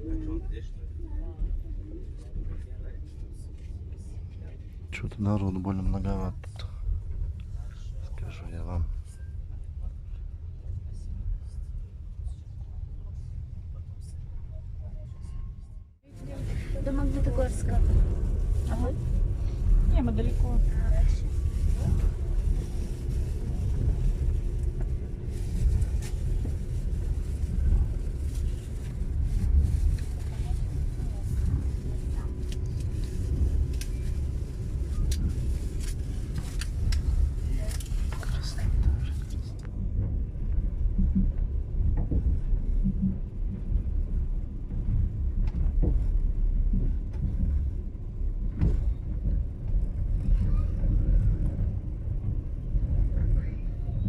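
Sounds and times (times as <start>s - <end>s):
passenger train running: 16.1s - 54.0s.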